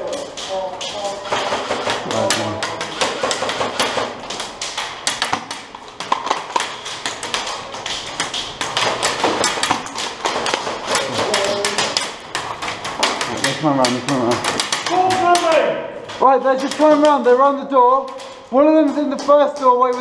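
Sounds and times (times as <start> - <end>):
pellets striking hard surfaces: 0.0 - 20.0
airsoft gunfire: 1.1 - 15.8.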